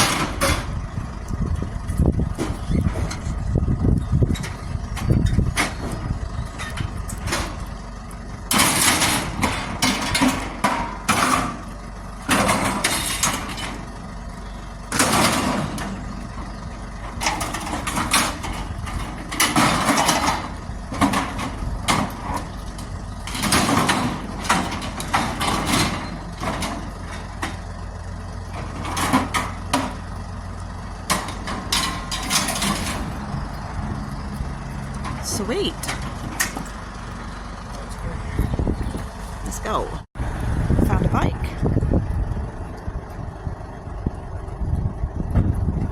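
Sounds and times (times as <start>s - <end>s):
scrap metal bangs and scrapes: 0.0s - 0.8s, 8.5s - 13.9s, 14.9s - 16.1s, 17.0s - 27.6s, 28.5s - 30.0s, 31.0s - 33.6s
truck engine idling: 0.0s - 45.9s.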